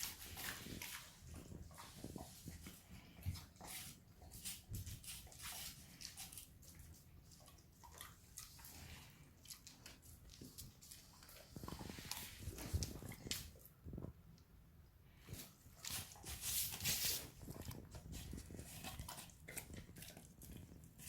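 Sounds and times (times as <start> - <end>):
dogs eating and licking: 0.0 - 14.3, 15.1 - 21.0.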